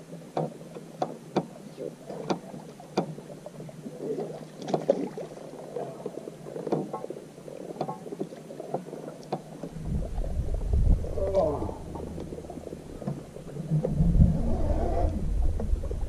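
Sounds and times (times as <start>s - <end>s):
rustle of water: 0.0s - 16.0s
knocks and taps in boat: 0.3s - 3.2s, 4.6s - 5.2s, 6.6s - 7.1s, 7.8s - 10.2s.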